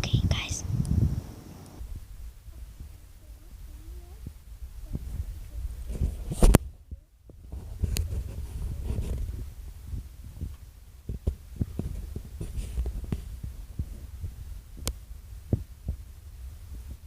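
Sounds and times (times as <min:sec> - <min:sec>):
microphone handling noise: 0:00.0 - 0:17.0.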